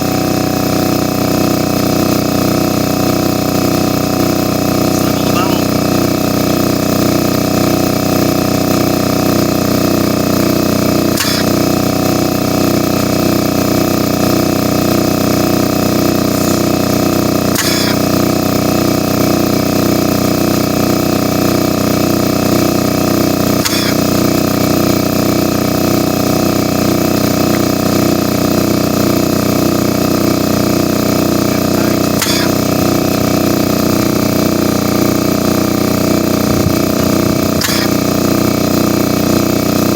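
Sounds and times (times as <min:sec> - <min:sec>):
air compressor running: 0:00.0 - 0:39.9.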